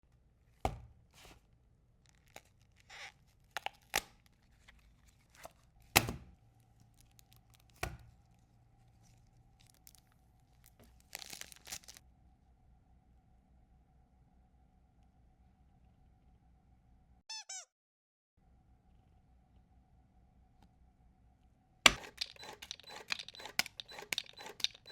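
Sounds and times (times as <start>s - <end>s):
packaging tearing and crinkling: 2.1s - 4.6s, 9.6s - 12.0s
sharp clicks and taps: 21.9s - 24.9s.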